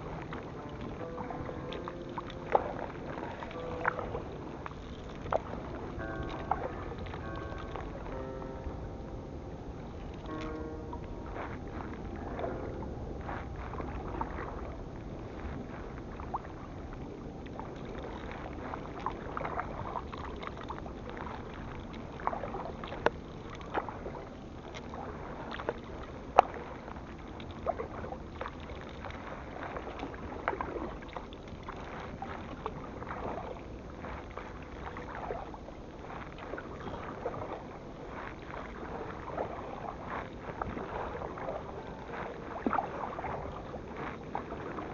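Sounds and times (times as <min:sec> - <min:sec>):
paddle clicks and knocks: 0:00.0 - 0:08.3, 0:10.0 - 0:35.5
water washing along a hull: 0:00.0 - 0:44.9.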